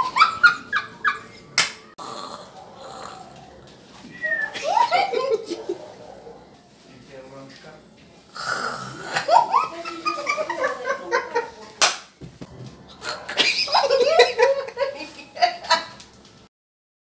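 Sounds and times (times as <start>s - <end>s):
laughter: 0.0s - 1.6s, 4.5s - 5.9s, 9.1s - 11.6s, 13.4s - 16.0s
sharp slap: 1.6s - 1.9s, 11.8s - 12.2s.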